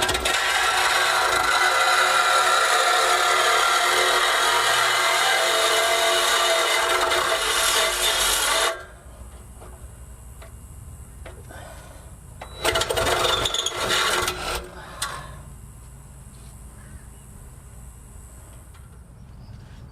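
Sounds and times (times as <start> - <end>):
power tool cutting steel pipe: 0.0 - 8.9, 12.5 - 14.7.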